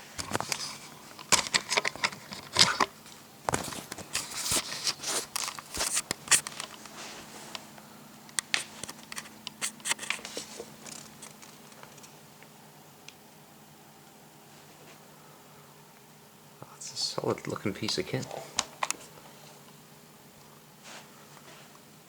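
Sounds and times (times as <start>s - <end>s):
packaging rustling and crinkling: 0.0s - 7.6s
plastic parts clicking and tapping: 1.2s - 2.9s.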